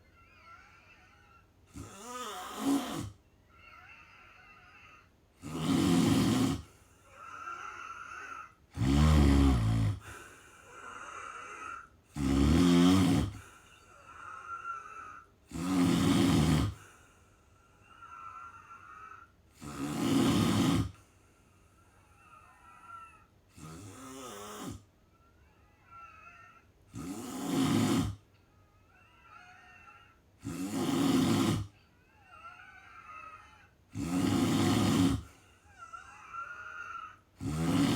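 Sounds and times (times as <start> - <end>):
quiet breaths: 0.0 - 37.9
person snoring: 0.3 - 17.0, 17.8 - 21.0, 22.0 - 24.8, 25.9 - 28.2, 29.0 - 37.9.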